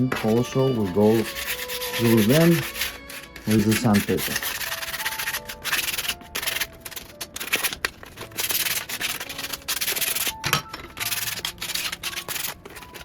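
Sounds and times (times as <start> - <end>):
sandpaper rubbing metal: 0.0 - 13.0.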